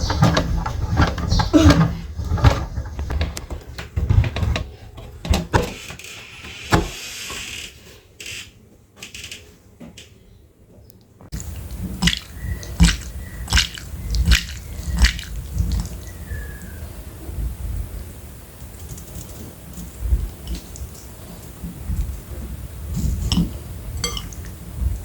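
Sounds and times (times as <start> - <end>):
meat grinder crunching: 11.9 - 15.8.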